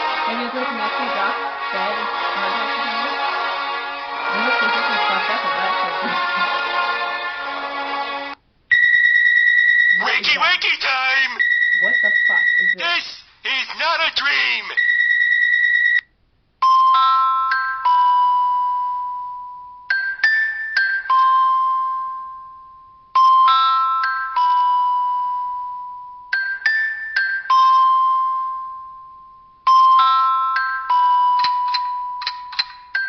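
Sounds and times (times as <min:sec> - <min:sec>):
phone ringtone chiming melody: 0:08.7 - 0:12.8, 0:14.8 - 0:16.0, 0:16.6 - 0:33.0
electronic beep: 0:11.2 - 0:13.0.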